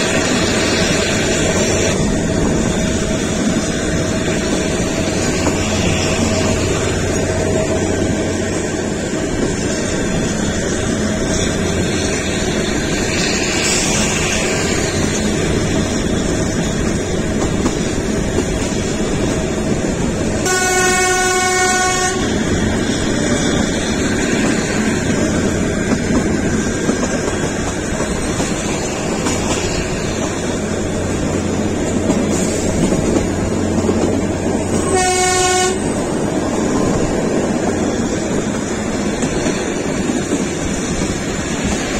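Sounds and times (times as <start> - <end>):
train wheels clattering: 0.0 - 41.9
train horn blast: 20.4 - 22.5, 34.7 - 36.0.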